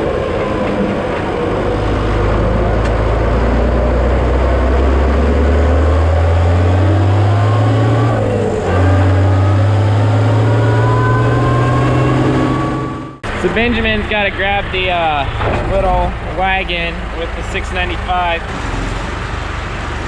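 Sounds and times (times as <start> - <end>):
faint rising whine: 0.0 - 15.4
tractor engine running: 0.0 - 20.0.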